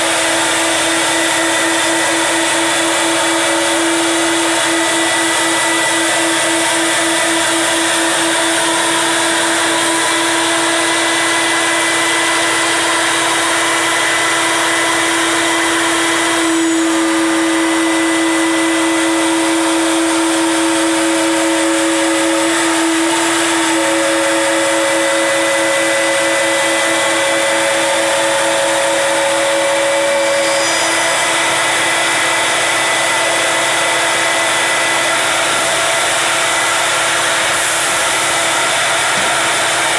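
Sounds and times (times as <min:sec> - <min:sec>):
router spindle whining: 0:00.0 - 0:39.9.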